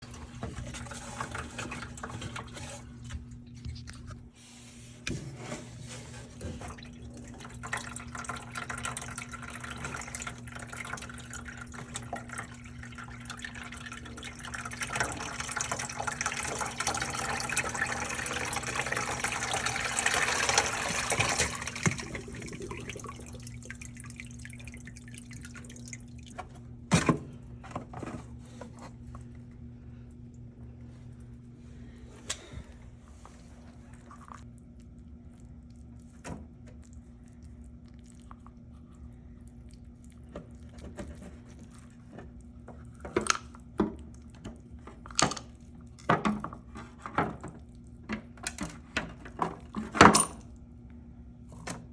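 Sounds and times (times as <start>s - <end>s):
water dripping and trickling: 6.8s - 26.4s
steady low hum: 21.1s - 46.0s.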